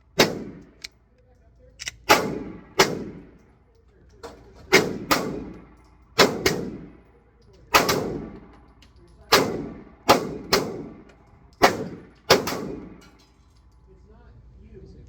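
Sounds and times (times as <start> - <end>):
pistol shots echoing: 0.1 - 0.8, 2.0 - 3.4, 4.7 - 7.1, 7.7 - 8.7, 9.3 - 13.2.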